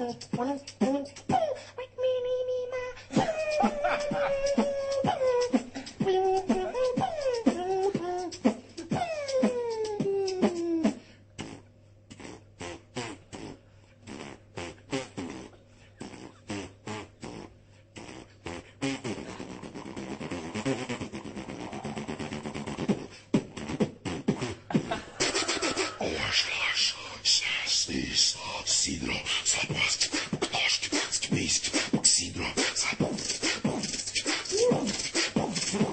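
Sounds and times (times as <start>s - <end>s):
beatboxing hums and whistles: 0.0s - 35.9s
buzzing hissing vocal sound: 0.0s - 35.9s
mouth clicks and pops: 4.5s - 25.9s, 29.9s - 35.9s.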